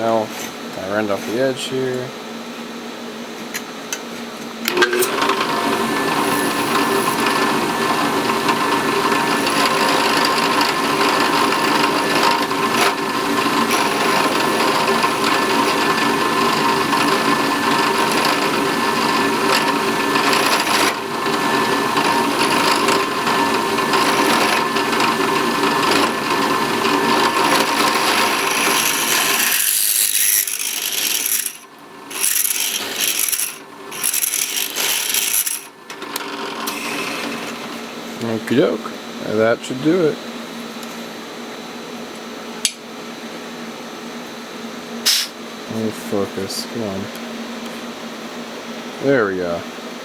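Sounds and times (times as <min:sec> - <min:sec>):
power tool motor running: 0:04.7 - 0:38.2
high scraping on metal: 0:27.0 - 0:35.8.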